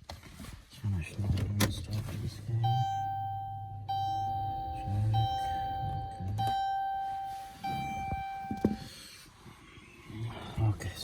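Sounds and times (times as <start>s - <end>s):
dashboard warning chime: 2.6s - 8.9s.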